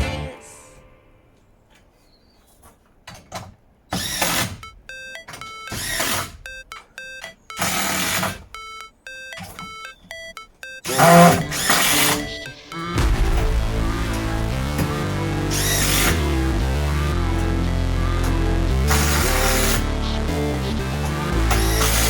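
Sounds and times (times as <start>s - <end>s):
high stepped whine: 11.4s - 20.5s.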